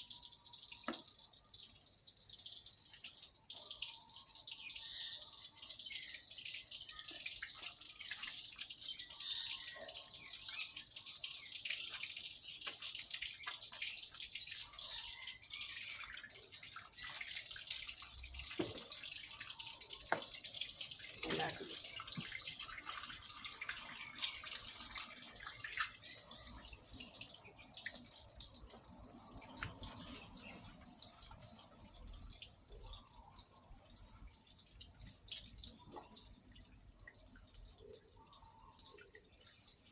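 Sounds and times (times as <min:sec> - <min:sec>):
running water splashing: 0:05.8 - 0:32.3.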